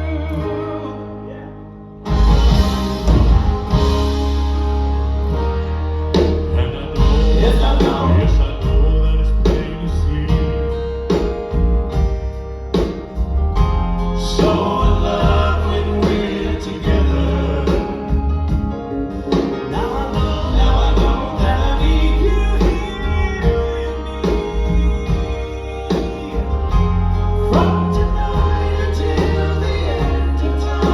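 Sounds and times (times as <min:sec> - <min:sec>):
live band music: 0:00.0 - 0:30.9
men singing in harmony: 0:06.5 - 0:10.7, 0:14.2 - 0:18.3, 0:19.1 - 0:30.9.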